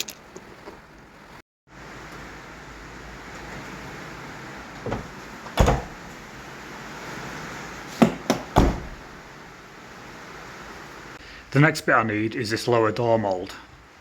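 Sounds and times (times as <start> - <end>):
steady background hiss: 1.1 - 14.0
car door knocks and clicks: 4.9 - 6.0, 8.0 - 9.0.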